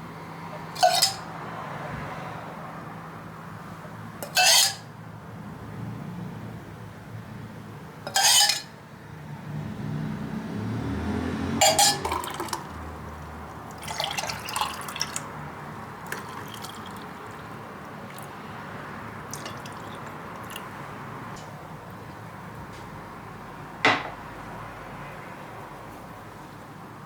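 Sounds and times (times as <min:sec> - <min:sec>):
kitchenware clinking: 0:00.6 - 0:01.3, 0:04.2 - 0:04.9, 0:08.1 - 0:08.7, 0:11.6 - 0:12.8, 0:13.7 - 0:15.2, 0:16.0 - 0:18.3, 0:19.3 - 0:21.6
liquid pouring into glass: 0:11.6 - 0:15.4, 0:16.0 - 0:18.4, 0:19.2 - 0:20.9.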